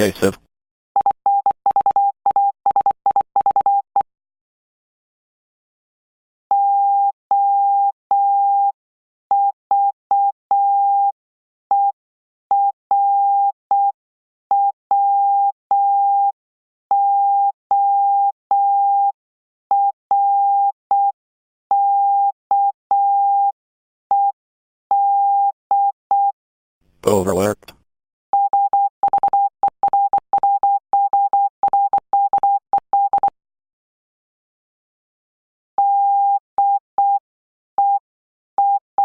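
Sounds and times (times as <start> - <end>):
morse code beeps: 1.0 - 3.8, 28.4 - 33.3.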